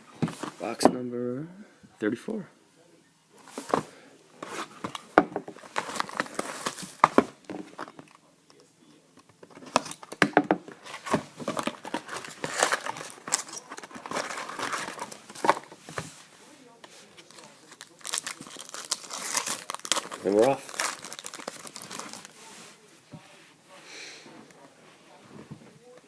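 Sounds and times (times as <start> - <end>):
plastic wrapping crinkling and tearing: 5.6 - 7.1, 10.8 - 15.7, 17.1 - 22.6.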